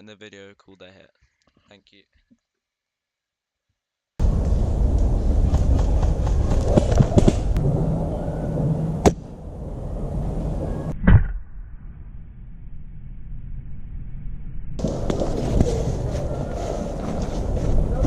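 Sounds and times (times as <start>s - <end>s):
wind and handling rumble: 4.2s - 11.0s, 14.8s - 18.0s
sharp crack: 8.9s - 9.4s.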